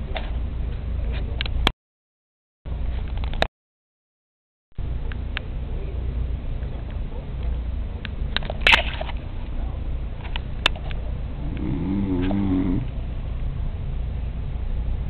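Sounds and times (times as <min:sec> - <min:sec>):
low rumble: 0:09.2 - 0:15.0
man snoring: 0:11.4 - 0:12.9.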